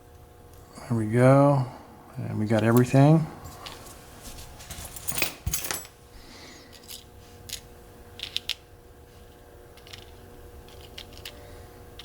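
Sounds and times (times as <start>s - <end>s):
metal parts clicking and tapping: 4.7s - 5.9s, 9.8s - 11.4s.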